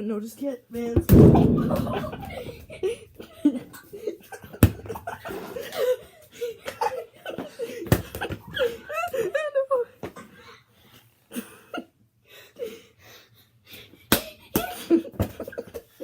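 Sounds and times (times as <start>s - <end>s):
sharp impacts: 1.0s - 3.1s.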